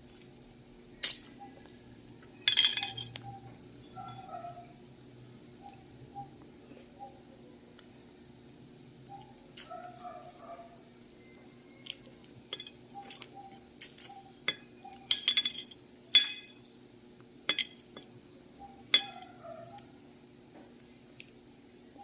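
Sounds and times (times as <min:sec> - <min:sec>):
faint steady hum: 0:00.0 - 0:22.0
sharp clicks and clinks: 0:12.5 - 0:16.6.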